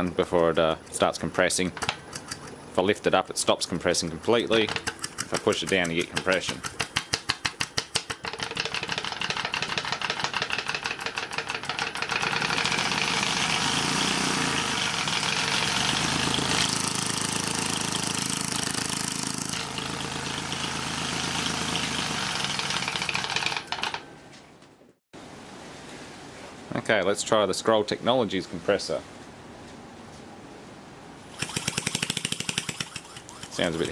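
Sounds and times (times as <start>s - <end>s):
compressor knocking and rushing: 4.5s - 24.0s, 31.3s - 33.9s.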